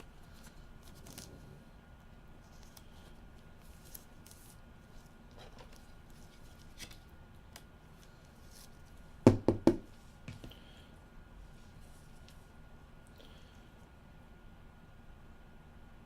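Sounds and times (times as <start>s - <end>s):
cards and packaging rustling: 2.4s - 9.0s.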